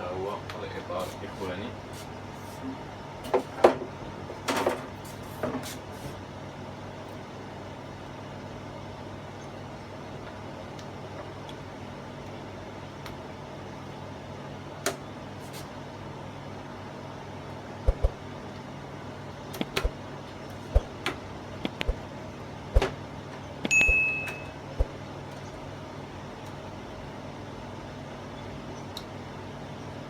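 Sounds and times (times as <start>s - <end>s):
steady low hum: 6.6s - 30.0s
high-pitched tone: 23.7s - 24.7s.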